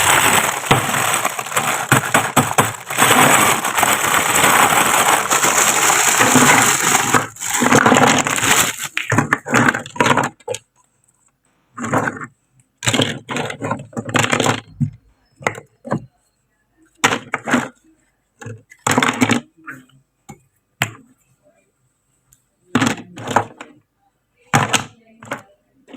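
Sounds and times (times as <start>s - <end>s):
plastic packaging crinkling: 0.0s - 9.2s.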